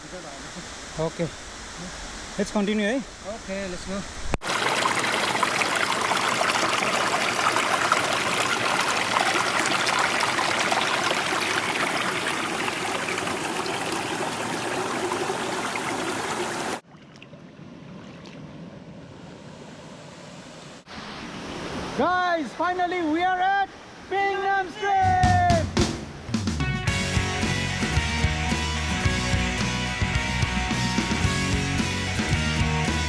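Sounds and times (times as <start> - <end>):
mountain stream rushing water: 4.4 - 16.8.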